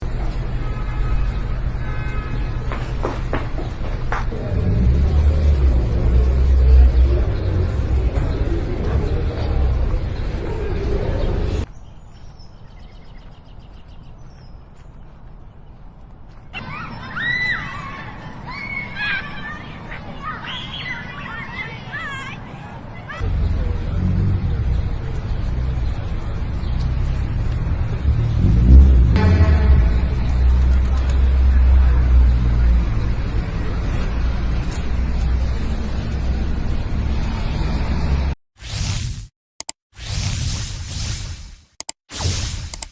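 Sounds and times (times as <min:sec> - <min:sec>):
passing traffic: 0:00.0 - 0:12.3, 0:15.0 - 0:38.4
heavy low rumble: 0:23.2 - 0:36.9.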